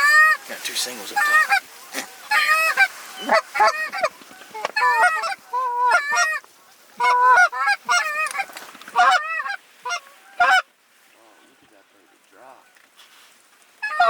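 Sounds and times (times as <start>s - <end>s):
goose honking and clucking: 0.0s - 10.7s, 13.8s - 14.0s.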